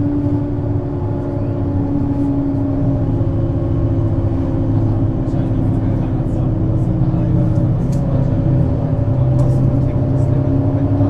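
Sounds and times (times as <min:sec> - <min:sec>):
bus engine drone: 0:00.0 - 0:11.0.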